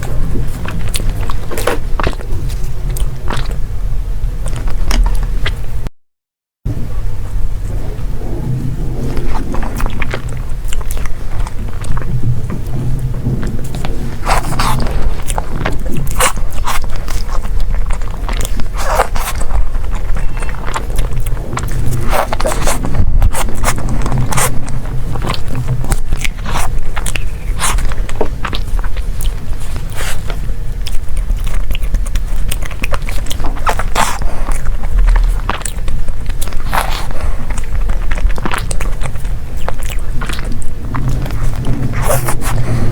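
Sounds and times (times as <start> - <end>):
biting and chewing: 0.0 - 5.8, 8.4 - 42.9
crunchy mouth clicks: 9.1 - 42.9.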